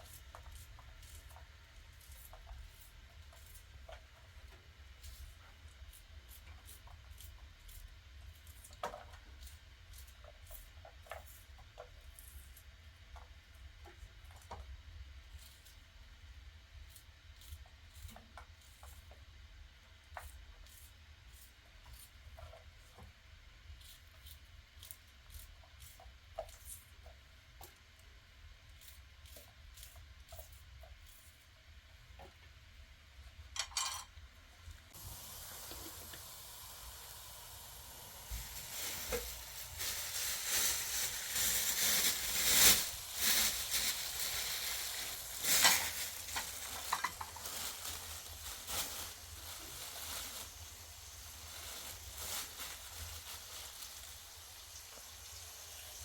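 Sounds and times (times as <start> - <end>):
crackling hiss with spits: 34.9 - 56.0
food sizzling in a pan: 34.9 - 56.0.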